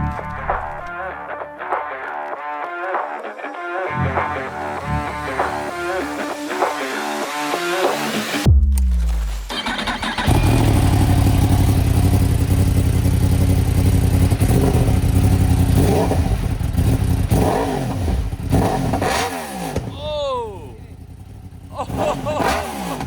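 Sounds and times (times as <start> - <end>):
motorcycle engine idling and revving: 9.5 - 23.0.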